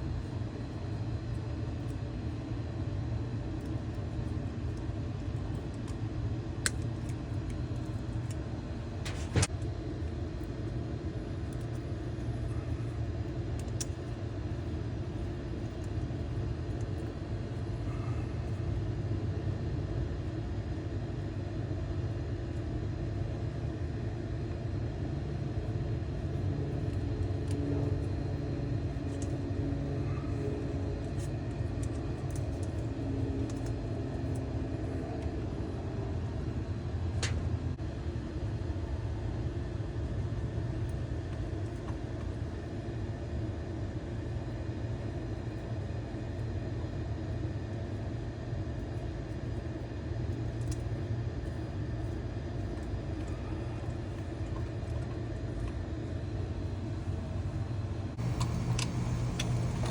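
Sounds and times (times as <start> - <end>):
steady low rumble: 24.7 - 48.0, 50.2 - 59.9.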